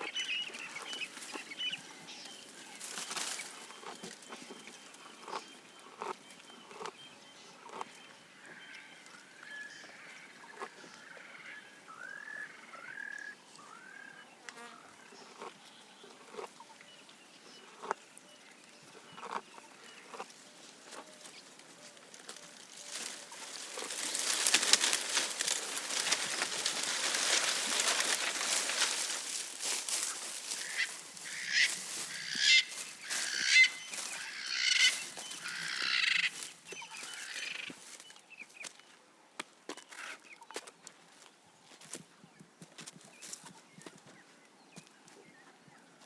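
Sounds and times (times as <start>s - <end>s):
leaves and twigs rustling: 0.0s - 5.4s, 20.2s - 38.9s
harsh bird calls: 22.9s - 37.8s.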